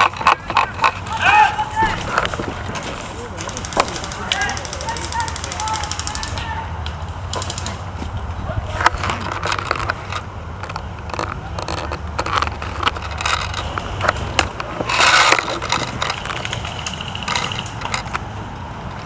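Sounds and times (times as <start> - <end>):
camera handling clicks and crunching: 0.0 - 1.0, 8.8 - 18.3.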